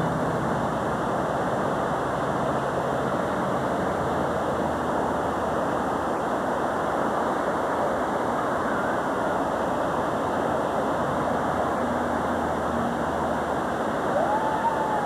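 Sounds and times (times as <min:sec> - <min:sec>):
faint low engine hum: 0:00.0 - 0:15.0
ocean surf rushing: 0:00.0 - 0:15.0.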